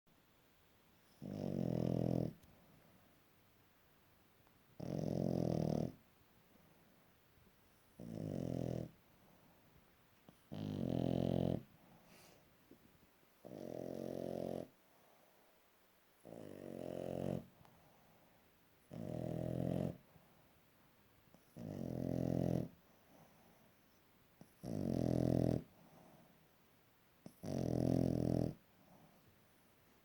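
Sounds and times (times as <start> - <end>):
puppy snoring: 1.0 - 2.6, 4.7 - 6.1, 7.7 - 9.5, 10.3 - 12.4, 13.4 - 14.8, 16.2 - 18.0, 18.8 - 20.2, 21.3 - 26.4, 27.2 - 29.2
quiet dog breathing: 4.8 - 30.0.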